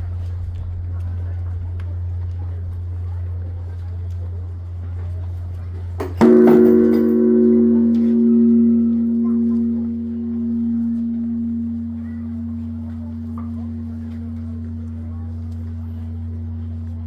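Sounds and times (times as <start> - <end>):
steady low hum: 0.0 - 17.0
large temple bell ringing: 6.0 - 17.0.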